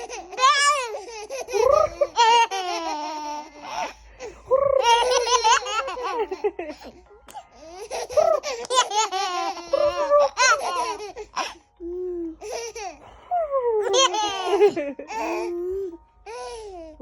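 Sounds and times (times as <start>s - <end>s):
baby giggling: 0.0s - 6.9s, 7.6s - 11.6s, 13.8s - 15.9s.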